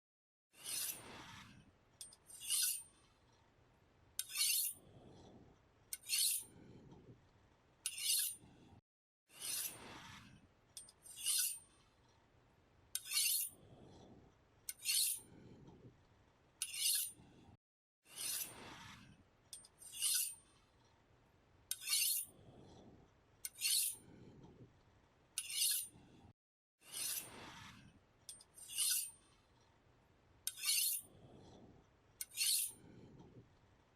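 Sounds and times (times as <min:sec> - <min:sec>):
knife scraping on sharpener: 0:00.6 - 0:02.9, 0:04.2 - 0:04.8, 0:05.9 - 0:06.5, 0:07.8 - 0:08.4, 0:09.3 - 0:09.9, 0:10.8 - 0:11.7, 0:13.0 - 0:13.6, 0:14.7 - 0:15.3, 0:16.6 - 0:17.2, 0:18.1 - 0:18.6, 0:19.6 - 0:20.4, 0:21.7 - 0:22.3, 0:23.4 - 0:24.0, 0:25.4 - 0:26.0, 0:26.8 - 0:27.6, 0:28.3 - 0:29.2, 0:30.4 - 0:31.1, 0:32.2 - 0:32.8.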